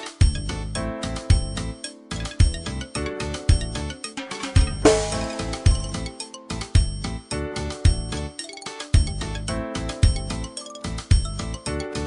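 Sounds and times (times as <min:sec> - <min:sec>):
instrumental demo music: 0:01.3 - 0:08.2
deep bass drum hits: 0:04.6 - 0:06.0
cymbal crash: 0:04.7 - 0:06.0.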